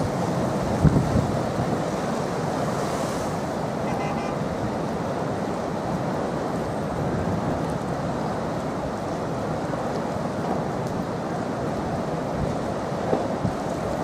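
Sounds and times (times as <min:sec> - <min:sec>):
wind buffeting microphone: 0:00.0 - 0:03.1
storm surf breaking: 0:00.0 - 0:14.0.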